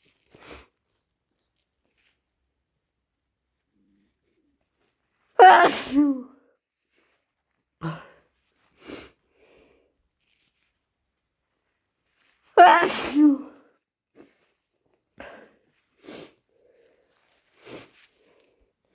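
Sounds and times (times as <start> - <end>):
person sneezing: 5.4 - 6.3, 12.6 - 13.6.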